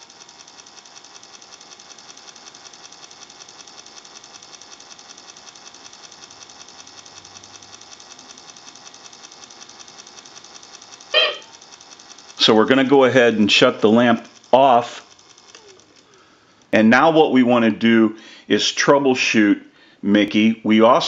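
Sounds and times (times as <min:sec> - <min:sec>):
servo motor whirring: 0:00.0 - 0:16.8.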